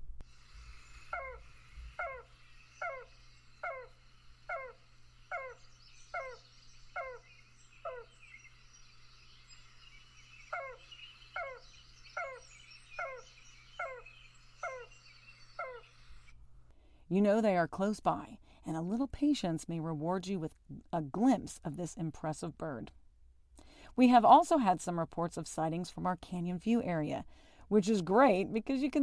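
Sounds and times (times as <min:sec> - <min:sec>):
birds chirping faintly: 0:00.2 - 0:22.9.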